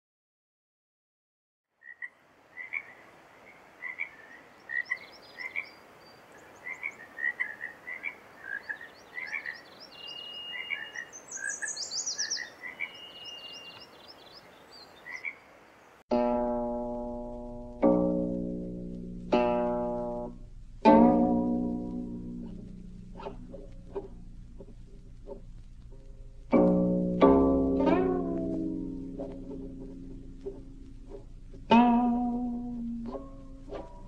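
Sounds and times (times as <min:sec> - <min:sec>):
frogs calling in chorus: 0:01.8 - 0:13.9, 0:14.8 - 0:15.6
bird calls: 0:01.8 - 0:16.0
faint steady hiss: 0:01.8 - 0:34.0
plucked-string music: 0:16.1 - 0:34.0.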